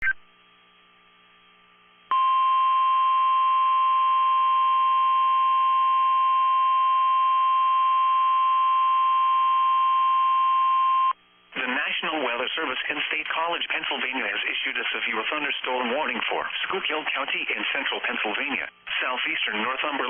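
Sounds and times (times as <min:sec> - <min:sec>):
faint radio hiss: 0:11.2 - 0:20.0.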